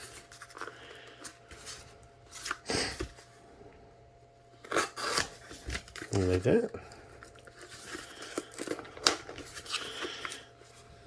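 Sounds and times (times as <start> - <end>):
packaging rustling and clicking: 4.6 - 10.5.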